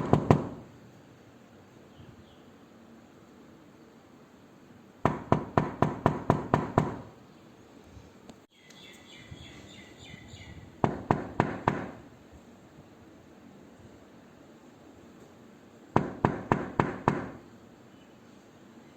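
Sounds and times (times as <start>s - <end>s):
rapid knocking on a door: 0.0s - 0.7s, 5.0s - 7.1s, 10.8s - 12.0s, 16.0s - 17.4s
faint high chirping: 7.2s - 10.8s.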